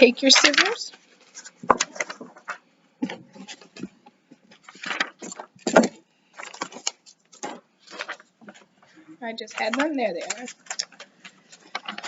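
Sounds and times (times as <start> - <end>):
paper rustling: 0.0 - 12.0.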